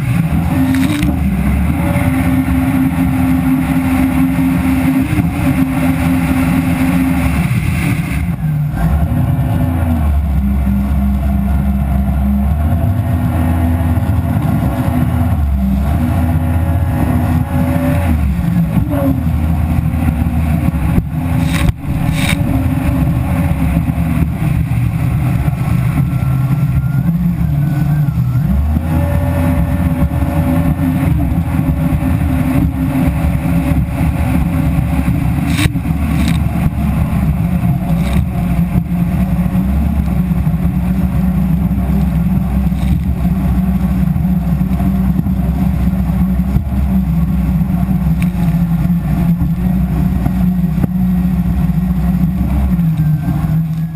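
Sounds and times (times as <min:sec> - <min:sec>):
jet ski engine running: 0:00.0 - 0:53.9.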